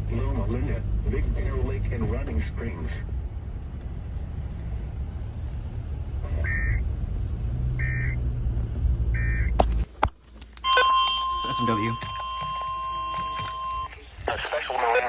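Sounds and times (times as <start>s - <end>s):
car road and engine rumble: 0.0s - 15.0s
short electronic beeps: 7.8s - 8.2s, 9.2s - 9.6s, 10.6s - 13.9s.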